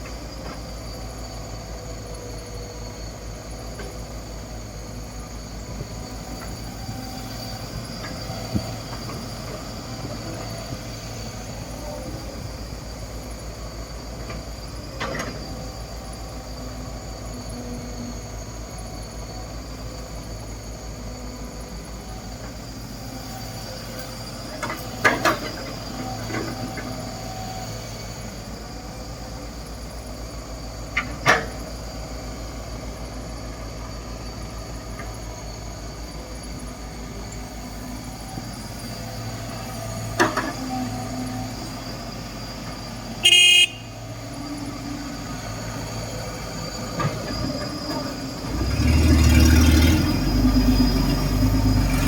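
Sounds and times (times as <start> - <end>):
excavator diesel engine running: 0.0 - 52.0
horn toot: 43.2 - 44.0.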